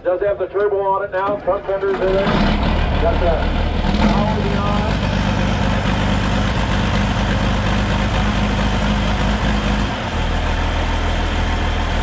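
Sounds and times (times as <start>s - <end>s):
tractor engine idling: 1.2s - 12.0s.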